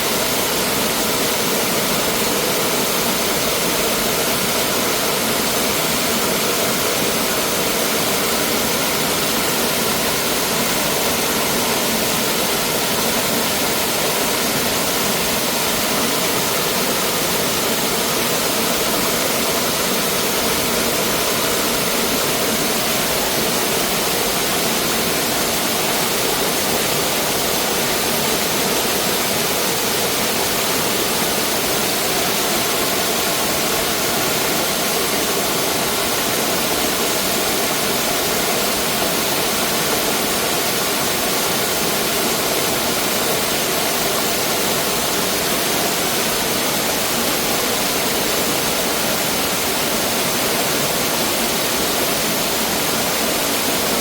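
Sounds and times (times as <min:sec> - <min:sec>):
stream rushing over rocks: 0:00.0 - 0:54.0.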